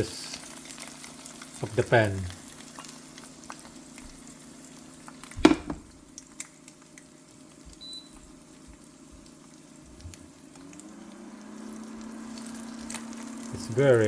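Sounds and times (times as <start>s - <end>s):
egg sizzling in a pan: 0.0s - 14.0s
sharp knock: 5.4s - 5.9s.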